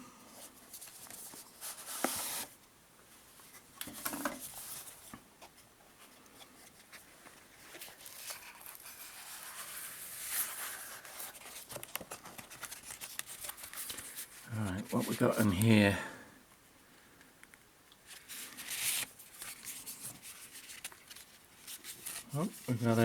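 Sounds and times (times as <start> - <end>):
packaging rustle: 6.6 - 15.7, 18.1 - 23.0.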